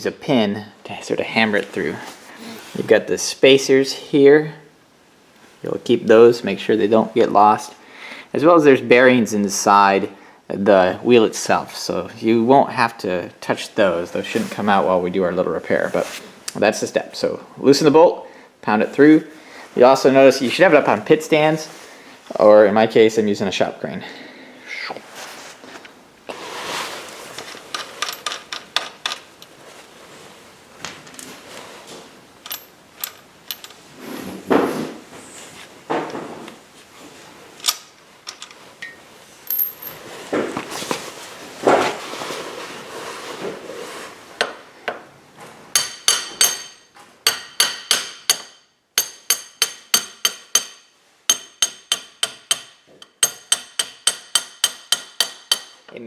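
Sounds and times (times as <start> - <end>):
metal tools clinking: 27.5 - 29.6, 32.4 - 33.8, 37.6 - 40.0, 45.8 - 54.4.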